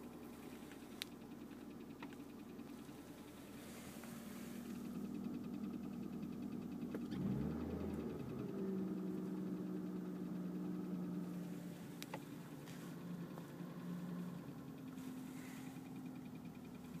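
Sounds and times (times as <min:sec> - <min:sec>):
light fast ticking: 0:00.0 - 0:07.0
car engine idling: 0:00.0 - 0:17.0.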